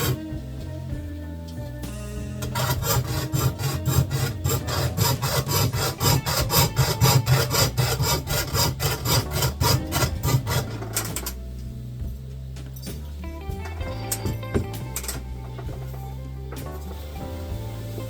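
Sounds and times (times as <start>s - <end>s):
fret saw cutting metal: 0.0s - 0.2s, 2.3s - 11.4s.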